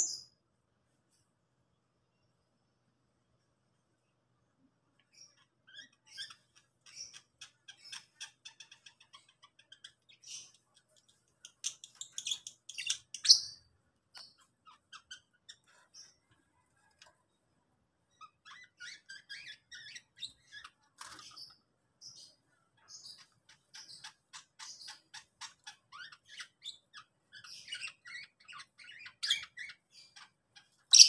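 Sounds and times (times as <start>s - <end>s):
lovebirds chattering: 5.0s - 16.9s, 18.1s - 31.0s.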